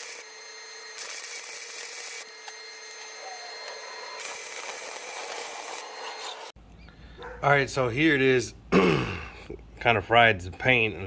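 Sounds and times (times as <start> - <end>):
welding arc hissing and crackling: 0.0 - 0.3, 0.9 - 6.5.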